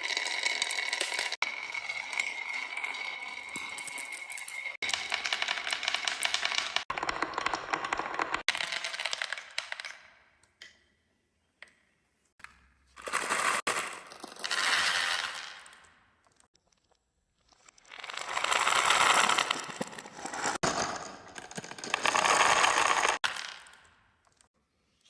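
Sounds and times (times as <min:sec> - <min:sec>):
marbles clattering down a marble run: 0:00.0 - 0:10.0, 0:13.0 - 0:15.9, 0:17.7 - 0:23.9.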